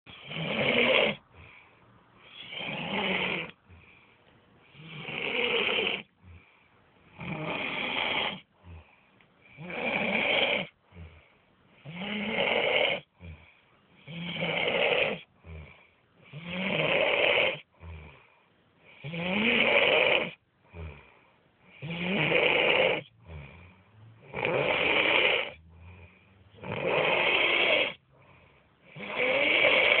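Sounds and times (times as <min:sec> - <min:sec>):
man snoring heavily: 0:00.1 - 0:01.6, 0:02.3 - 0:03.6, 0:04.7 - 0:06.4, 0:07.1 - 0:11.2, 0:11.8 - 0:18.3, 0:18.9 - 0:21.1, 0:21.7 - 0:28.1, 0:28.8 - 0:30.0
quiet breathing: 0:00.1 - 0:09.9, 0:10.6 - 0:11.9, 0:12.9 - 0:14.4, 0:15.1 - 0:16.4, 0:17.6 - 0:19.1, 0:20.3 - 0:21.9, 0:23.0 - 0:24.3, 0:25.4 - 0:30.0.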